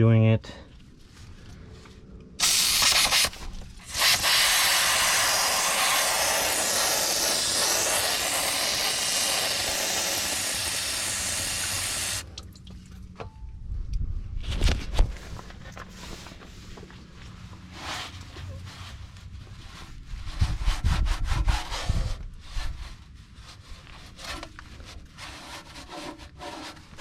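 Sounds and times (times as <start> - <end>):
pressurised spray hissing: 2.4 - 12.2.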